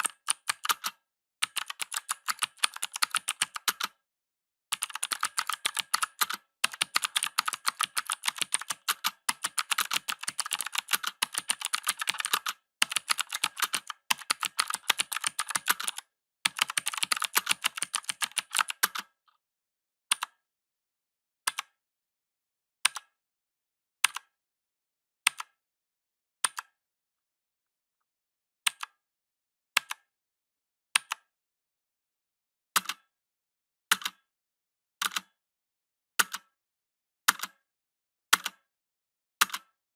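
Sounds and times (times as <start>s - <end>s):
mechanical keyboard clicking: 0.0s - 3.9s, 4.8s - 19.1s.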